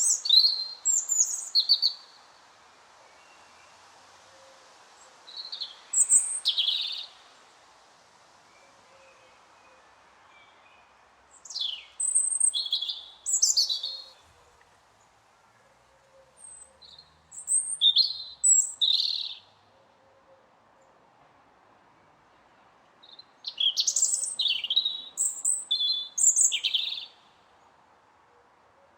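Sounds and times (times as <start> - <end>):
robin singing: 0.0 - 2.3, 5.3 - 7.3, 10.4 - 14.4, 16.2 - 19.6, 23.0 - 27.4
faint steady hiss: 0.0 - 28.9.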